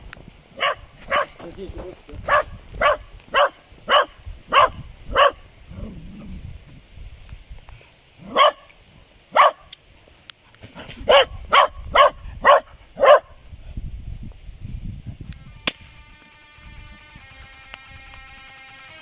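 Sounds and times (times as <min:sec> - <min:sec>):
dog barking: 0:00.6 - 0:01.4, 0:02.3 - 0:05.4, 0:08.2 - 0:08.7, 0:09.3 - 0:09.7, 0:11.0 - 0:13.4.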